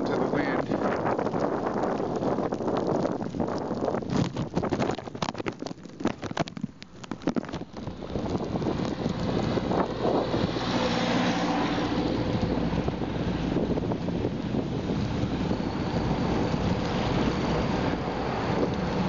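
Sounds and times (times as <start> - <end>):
wind buffeting microphone: 0.0 - 19.0
bike clattering over rough road: 0.8 - 10.2.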